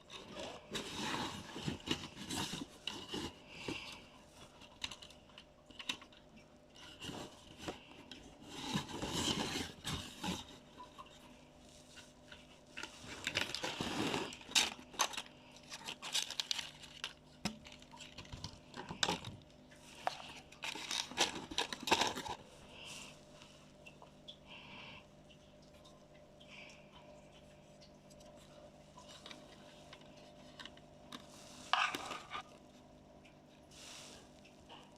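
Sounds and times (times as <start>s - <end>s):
packaging crinkling and tearing: 12.3s - 22.4s.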